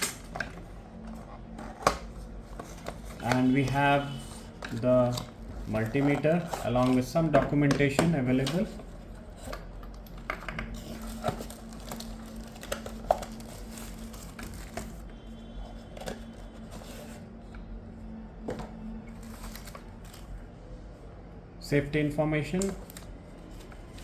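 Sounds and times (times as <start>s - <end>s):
paper and cardboard rustling: 0.5s - 9.7s, 10.7s - 17.3s, 18.5s - 20.4s.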